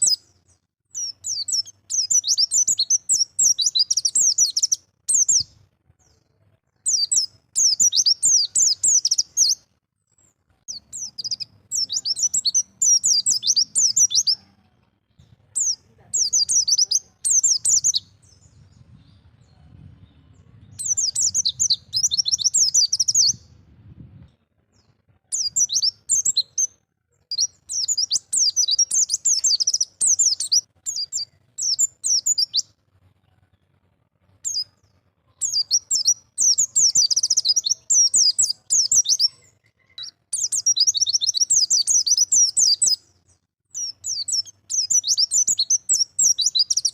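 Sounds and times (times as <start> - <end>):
bird high twittering: 0.0 - 0.2, 1.0 - 5.5, 6.9 - 9.6, 10.7 - 14.4, 15.6 - 18.5, 20.7 - 23.5, 25.3 - 26.7, 27.3 - 32.6, 35.4 - 43.0, 43.8 - 46.9.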